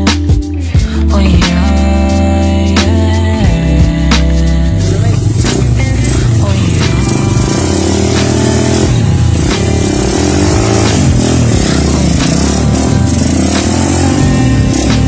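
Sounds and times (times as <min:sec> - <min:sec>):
motorcycle engine revving: 0:03.5 - 0:15.0.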